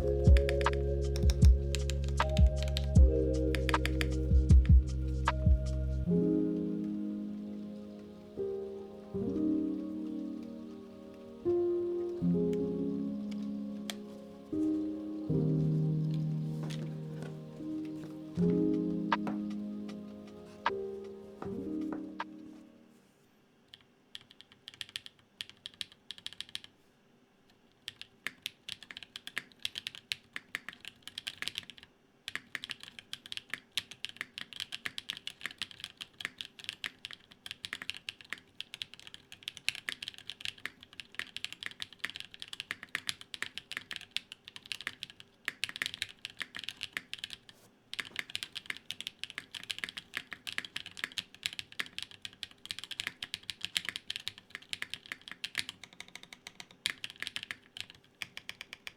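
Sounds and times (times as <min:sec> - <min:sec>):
fast mechanical keyboard typing: 0:00.0 - 0:04.8, 0:23.7 - 0:26.8, 0:27.8 - 0:58.9.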